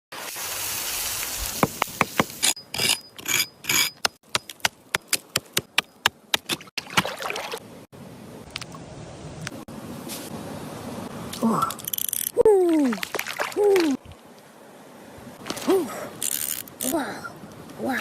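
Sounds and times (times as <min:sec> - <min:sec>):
steady hiss: 0:00.2 - 0:02.5.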